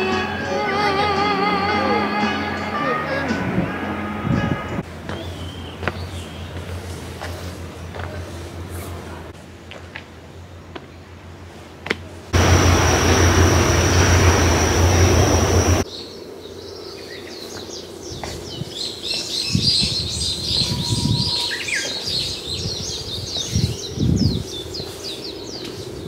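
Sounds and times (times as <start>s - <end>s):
small birds chirping: 5.1s - 6.8s, 12.4s - 26.0s
loud steady rushing noise: 12.3s - 16.6s.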